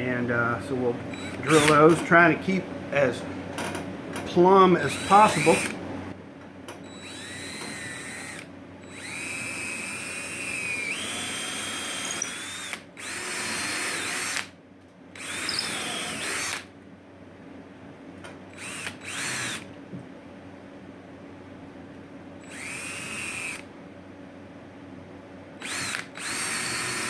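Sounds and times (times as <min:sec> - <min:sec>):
power drill boring into wood: 0:01.2 - 0:01.9, 0:04.8 - 0:05.8, 0:06.9 - 0:14.5, 0:15.2 - 0:16.7, 0:18.6 - 0:19.7, 0:22.4 - 0:23.7, 0:25.6 - 0:27.0.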